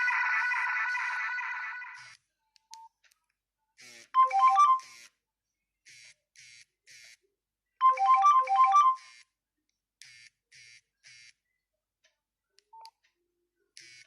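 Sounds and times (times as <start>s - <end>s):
electronic ringtone beeps: 0.0s - 2.2s, 4.2s - 5.1s, 7.8s - 9.2s.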